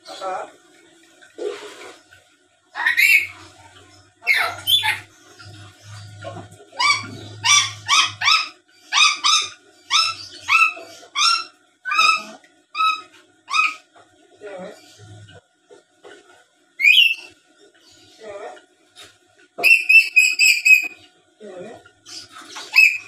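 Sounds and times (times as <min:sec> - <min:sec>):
parrot shrill calls: 0:02.8 - 0:03.4, 0:04.2 - 0:05.1, 0:06.8 - 0:13.9, 0:16.8 - 0:17.3, 0:19.6 - 0:21.0, 0:22.6 - 0:23.0.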